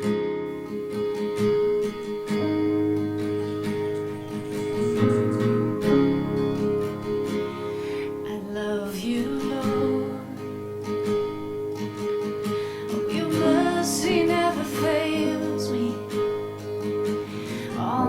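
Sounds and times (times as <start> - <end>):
strummed acoustic guitar: 0.0 - 18.0
long held instrumental notes: 0.5 - 8.9.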